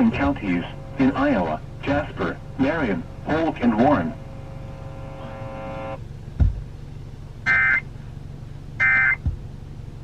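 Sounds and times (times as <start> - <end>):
buzzy digital data tones: 0.0 - 6.0
low thump: 6.4 - 6.7.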